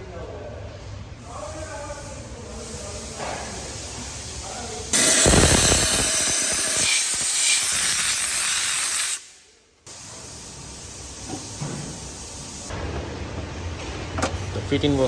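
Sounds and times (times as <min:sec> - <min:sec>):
loud steady hiss: 0:01.2 - 0:12.7.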